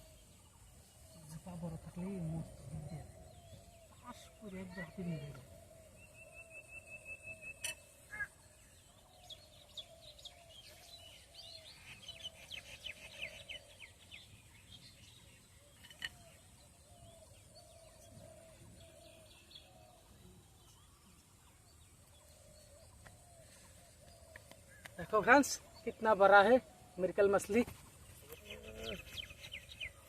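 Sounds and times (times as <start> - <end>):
lower repeated bird call: 2.5 - 14.1.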